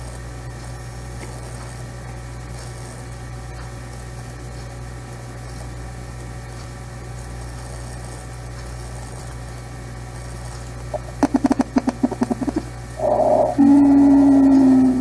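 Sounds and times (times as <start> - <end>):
short low pulses: 13.0 - 15.0
wheezing breath noise: 13.0 - 15.0.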